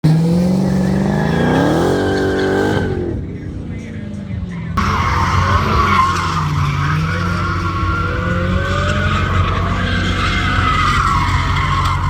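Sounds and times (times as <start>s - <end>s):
car engine revving hard: 0.0s - 3.4s, 4.8s - 12.0s
tyres squealing: 4.8s - 12.0s.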